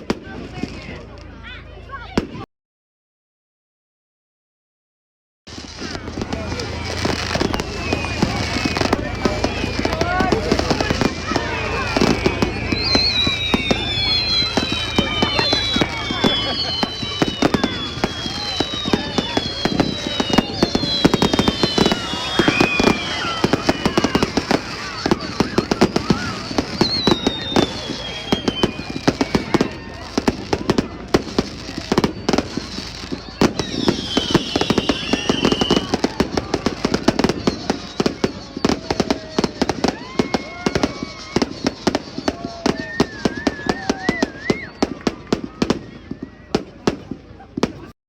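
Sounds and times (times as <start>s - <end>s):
fireworks bangs and crackles: 0.0s - 2.5s, 5.5s - 47.9s
falling firework whistles: 5.5s - 47.9s.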